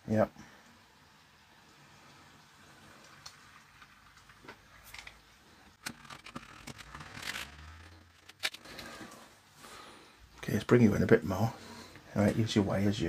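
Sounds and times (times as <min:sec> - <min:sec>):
plastic keypad clicks and scrapes: 0:05.8 - 0:08.8.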